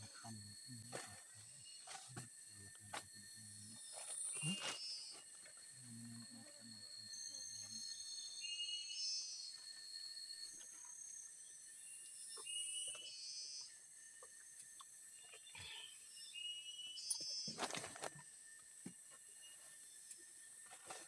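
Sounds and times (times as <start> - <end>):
insects chirping and buzzing: 0.0 - 21.0
short chirping calls: 3.4 - 5.3.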